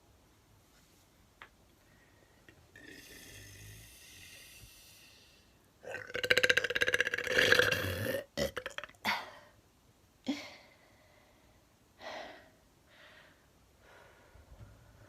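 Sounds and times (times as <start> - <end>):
woman burping loudly: 5.8 - 9.3.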